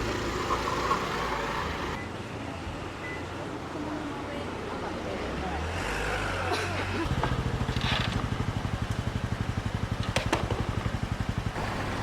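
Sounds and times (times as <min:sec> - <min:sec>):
engine running with fast pulse: 0:07.1 - 0:12.0.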